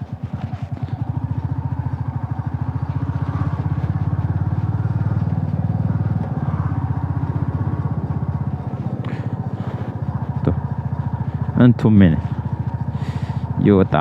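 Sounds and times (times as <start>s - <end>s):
motorcycle engine running: 0.0s - 14.0s.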